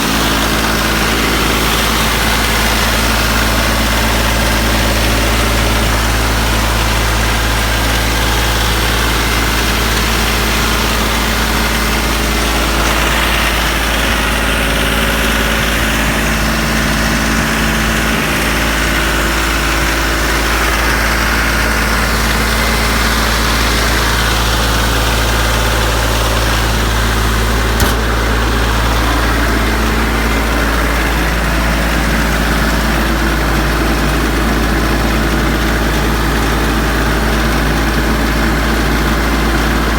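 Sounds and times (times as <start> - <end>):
tractor diesel engine idling: 0.0 - 39.9
short sharp click: 27.8 - 28.2.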